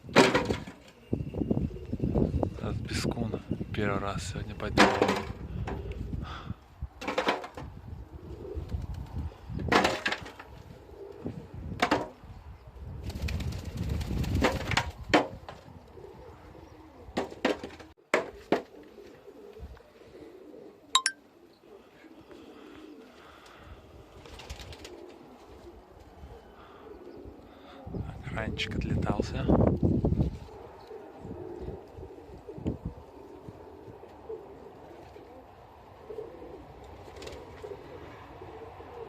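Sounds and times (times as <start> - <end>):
pigeons cooing: 0.0 - 2.5, 5.0 - 39.0
thin high call: 21.0 - 21.2.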